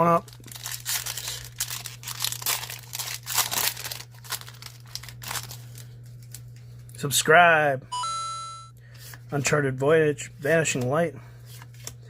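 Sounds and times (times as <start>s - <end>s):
foil wrapper crinkling: 0.0s - 6.9s.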